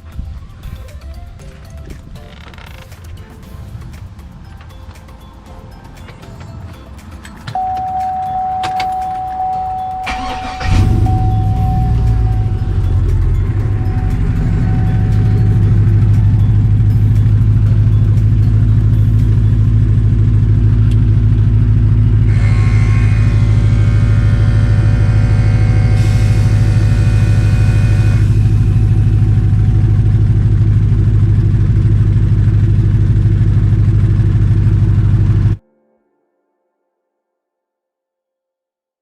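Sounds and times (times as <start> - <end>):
steady higher tones: 3.0 - 35.1
air compressor humming and pulsing: 9.0 - 35.6.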